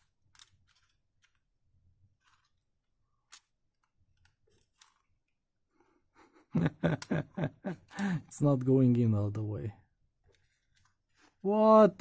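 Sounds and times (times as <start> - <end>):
plastic parts clicking together: 0.0 - 1.6, 2.2 - 5.3.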